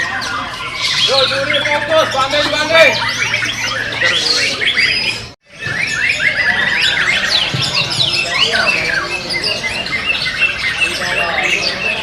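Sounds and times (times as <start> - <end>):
songbirds singing whistles and chirps: 0.0 - 12.0.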